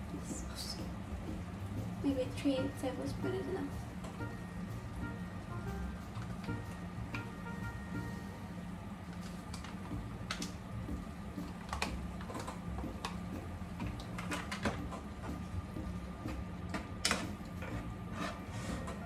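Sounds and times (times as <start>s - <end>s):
steady low hum: 0.0s - 19.0s
utensil scraping and tapping in pan: 16.7s - 19.0s.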